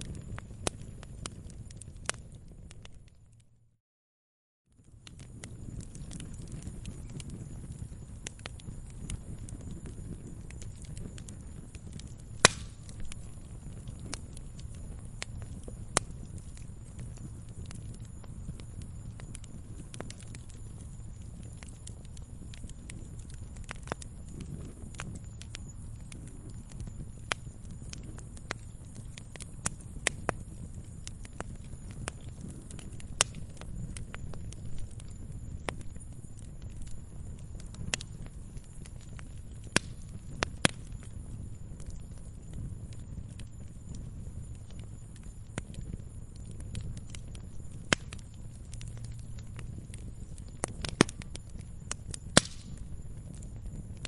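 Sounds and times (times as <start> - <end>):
campfire crackling: 0.0 - 3.6, 4.7 - 54.0
low steady rumble: 4.9 - 54.0
sharp loud fire pop: 12.4 - 12.8, 52.4 - 52.7.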